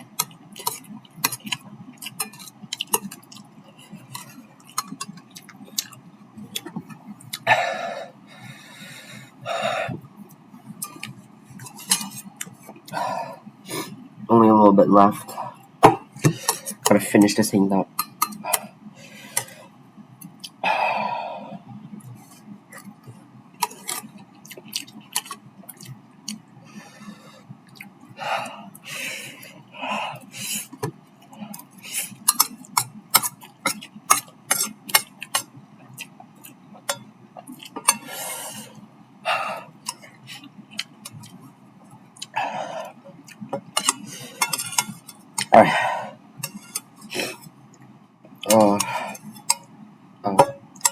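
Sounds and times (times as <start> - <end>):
person chewing noodles: 0.0 - 7.7, 17.9 - 49.8
breathy throat sounds: 7.3 - 10.1, 20.4 - 22.9, 42.2 - 43.1, 45.4 - 46.2, 47.0 - 47.5, 48.4 - 49.3
utensils clinking against dish: 10.8 - 12.2, 32.2 - 35.5, 37.7 - 38.2, 43.6 - 45.5, 46.4 - 47.5, 50.4 - 50.9.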